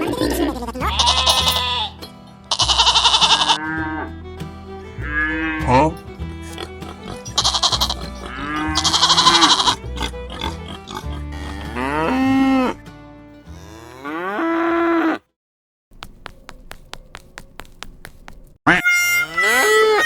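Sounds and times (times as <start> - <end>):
music: 0.0 - 13.7
livestock-like animal calls: 6.5 - 12.7, 18.7 - 20.0.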